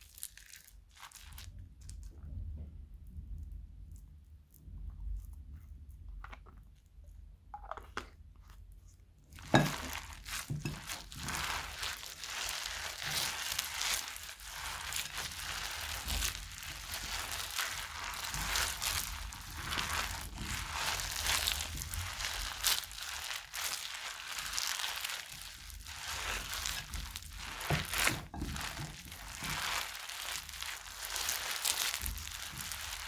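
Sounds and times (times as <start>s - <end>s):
crunchy slime crackling: 0.0s - 2.1s, 9.3s - 33.0s
loud crunch: 9.4s - 33.0s.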